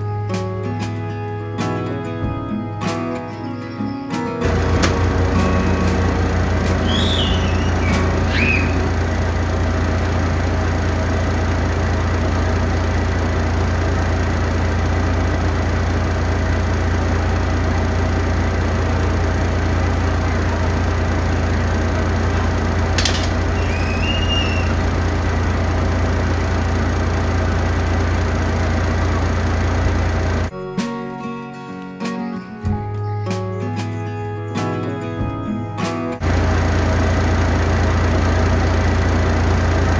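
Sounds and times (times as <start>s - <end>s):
vehicle engine idling: 4.4s - 30.5s, 36.2s - 39.9s
short high chirp: 6.8s - 8.9s, 23.5s - 24.8s
sharp click: 23.0s - 23.4s.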